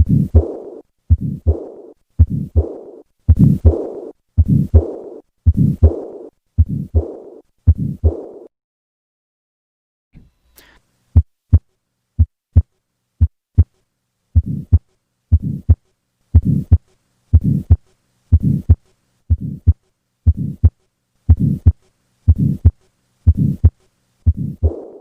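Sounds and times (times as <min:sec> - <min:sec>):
heartbeat through stethoscope: 0:00.0 - 0:08.5, 0:11.2 - 0:13.7, 0:14.4 - 0:15.8, 0:16.4 - 0:25.0
whooshing heart murmur: 0:00.0 - 0:08.5, 0:24.3 - 0:25.0.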